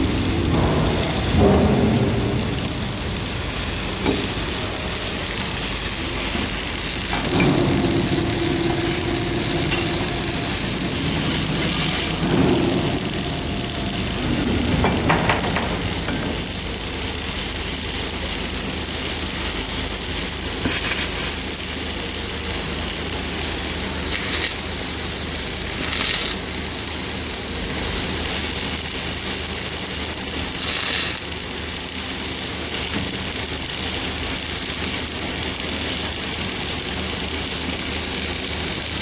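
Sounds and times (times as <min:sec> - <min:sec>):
engine idling: 0:00.0 - 0:17.5.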